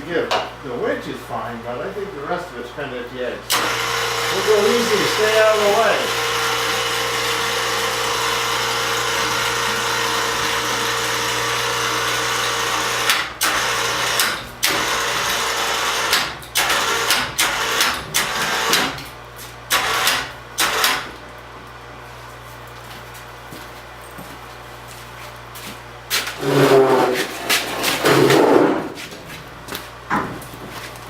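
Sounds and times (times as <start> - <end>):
electric crane winch running: 3.5 - 19.0, 19.7 - 21.0.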